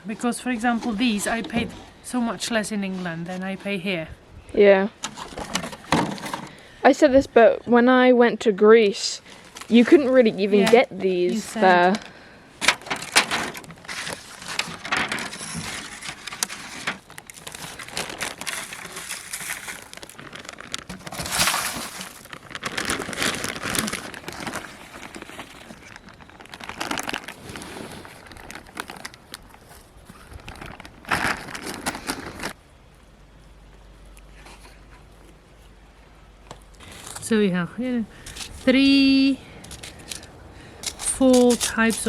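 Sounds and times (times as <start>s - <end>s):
seed packets rustling: 9.0s - 32.6s, 36.8s - 37.5s, 38.1s - 42.0s.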